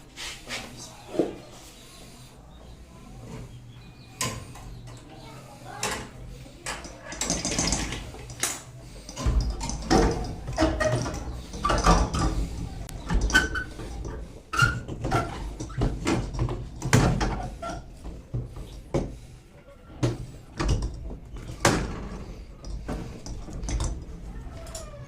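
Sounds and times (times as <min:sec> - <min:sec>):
metal parts knocking and scraping: 0:05.8 - 0:17.9.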